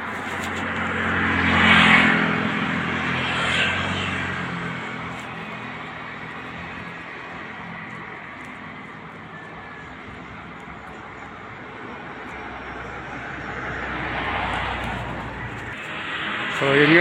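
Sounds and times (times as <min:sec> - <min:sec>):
vehicle passing close by: 0:00.0 - 0:08.8, 0:12.4 - 0:17.0.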